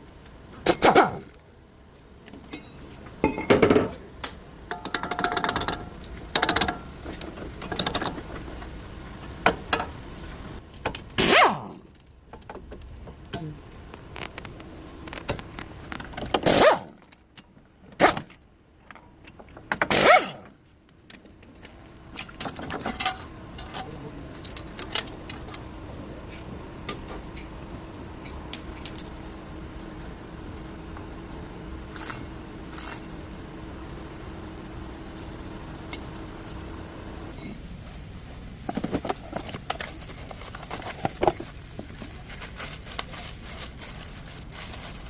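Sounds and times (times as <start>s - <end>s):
metal tools clinking and knocking: 2.4s - 4.0s, 4.7s - 6.9s, 28.5s - 30.2s, 31.9s - 33.1s
faint steady hum: 20.4s - 45.0s.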